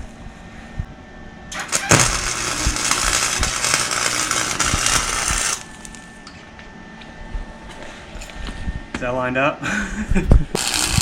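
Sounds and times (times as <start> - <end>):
welding arc crackling and sizzling: 1.5 - 6.2, 10.6 - 11.0.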